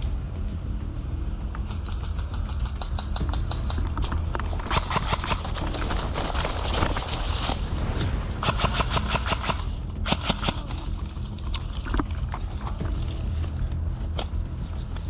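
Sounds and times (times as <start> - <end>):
low rumble: 0.0 - 15.0.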